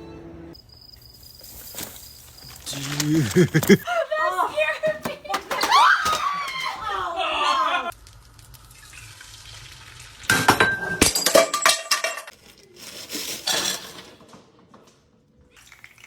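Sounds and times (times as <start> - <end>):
pots and pans clattering: 4.8 - 6.2, 10.3 - 12.3.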